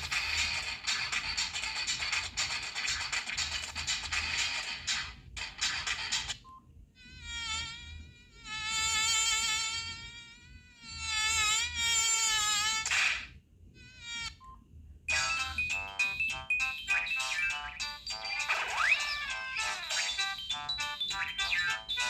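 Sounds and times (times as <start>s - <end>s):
melodic ringtone: 15.1s - 22.0s.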